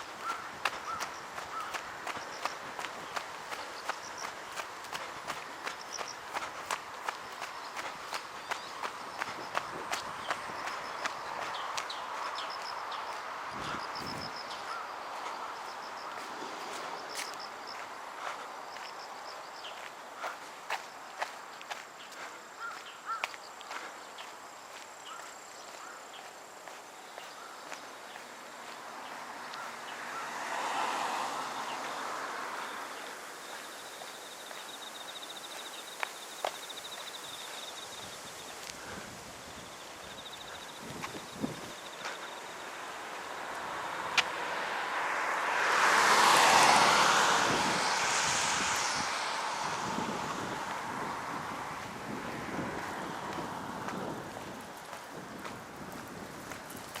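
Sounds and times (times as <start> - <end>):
footsteps: 0.0 - 14.2
insects chirping: 0.0 - 57.0
steady outdoor hiss: 0.0 - 57.0.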